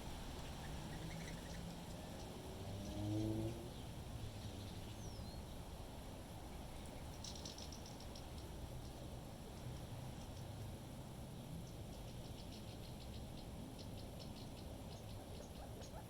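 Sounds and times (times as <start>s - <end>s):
small birds chirping: 0.4s - 2.4s, 11.6s - 16.0s.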